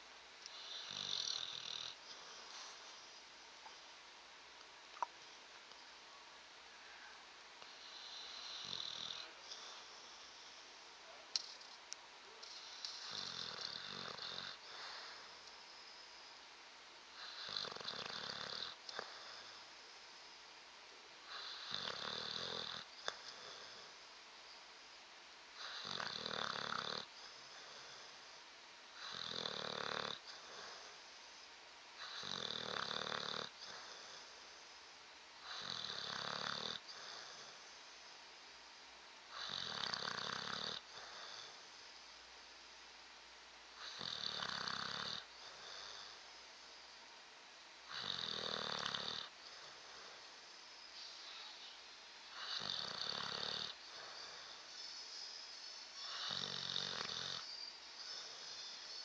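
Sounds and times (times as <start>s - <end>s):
dog snoring: 0.4s - 3.9s, 6.9s - 11.7s, 12.3s - 16.3s, 17.1s - 20.4s, 21.2s - 24.2s, 25.6s - 31.4s, 32.0s - 34.8s, 35.4s - 38.1s, 39.3s - 42.2s, 43.8s - 46.9s, 47.8s - 59.0s
dog breathing quietly: 0.5s - 4.0s, 12.3s - 16.5s, 25.6s - 38.3s, 47.9s - 59.0s.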